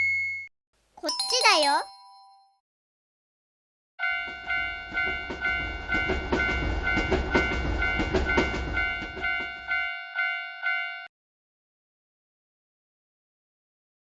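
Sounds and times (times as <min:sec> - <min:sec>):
railroad crossing bell ringing: 0:01.0 - 0:02.3, 0:04.0 - 0:11.1
train rumble and wheel clatter: 0:04.1 - 0:10.3.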